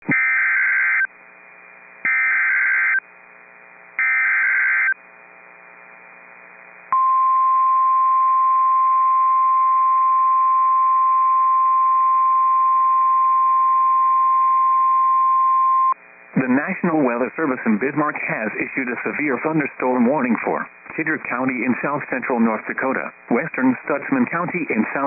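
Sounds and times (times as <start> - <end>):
steady alarm tone: 0.1 - 1.1, 2.1 - 3.0, 4.0 - 5.0.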